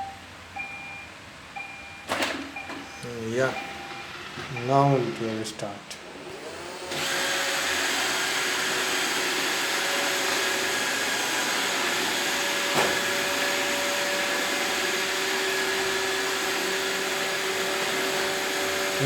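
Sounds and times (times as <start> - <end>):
robot vacuum whirring: 6.2 - 19.0.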